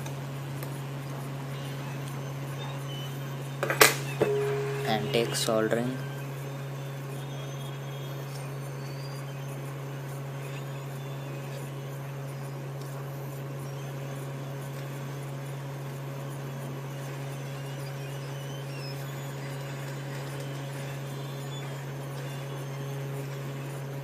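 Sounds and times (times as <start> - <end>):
hot air blower humming: 4.2 - 7.8.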